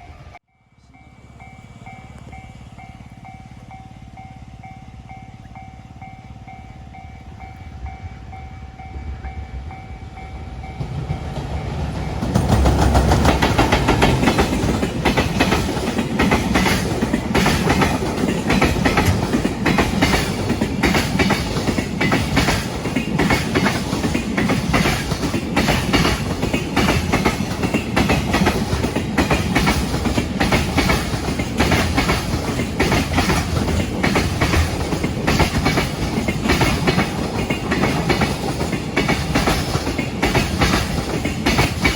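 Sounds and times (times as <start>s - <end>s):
freight train passing: 0.0s - 41.9s
train wheels clattering over rail joints: 10.7s - 41.9s.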